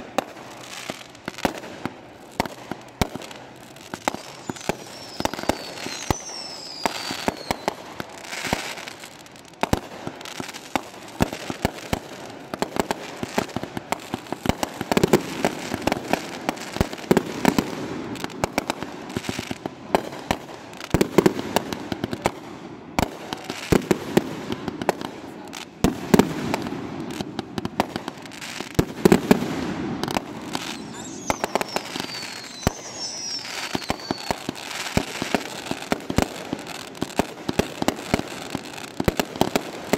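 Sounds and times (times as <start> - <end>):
fireworks crackling pops: 0.0 - 39.9
heavy firework bursts: 0.0 - 39.9
falling firework whistle: 3.8 - 9.2, 28.4 - 36.8.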